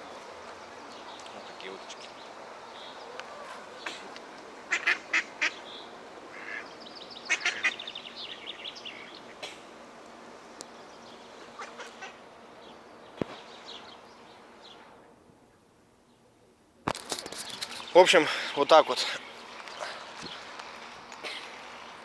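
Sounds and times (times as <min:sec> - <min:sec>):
ducks quacking: 0:03.3 - 0:07.9, 0:11.4 - 0:12.2.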